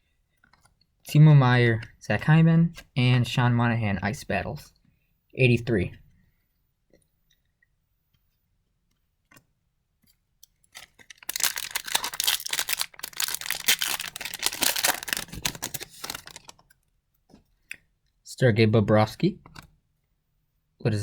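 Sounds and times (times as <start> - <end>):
foil wrapper tearing and crinkling: 10.8 - 16.6.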